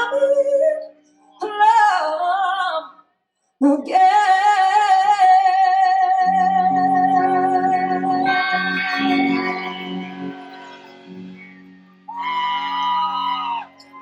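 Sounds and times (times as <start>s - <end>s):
woman singing: 0.0s - 3.0s, 3.6s - 11.3s.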